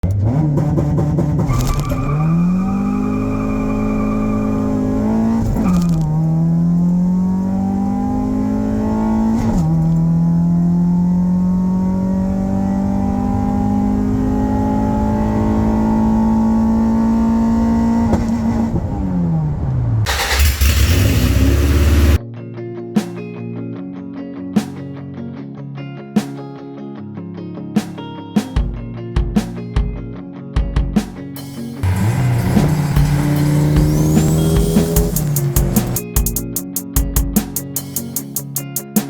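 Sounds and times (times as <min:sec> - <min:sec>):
car engine accelerating: 0:00.0 - 0:22.2, 0:31.8 - 0:36.0
loud rush of noise: 0:20.1 - 0:22.2.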